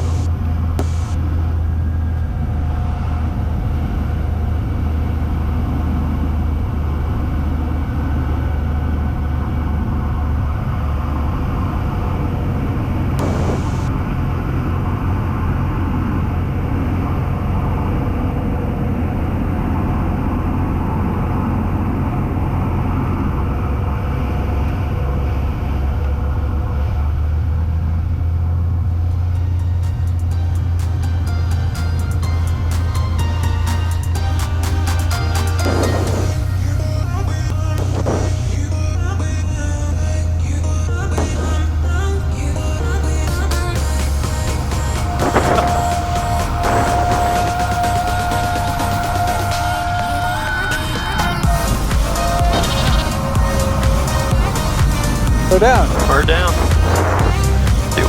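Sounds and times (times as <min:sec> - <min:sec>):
plane engine and propeller droning: 0:00.0 - 0:58.0.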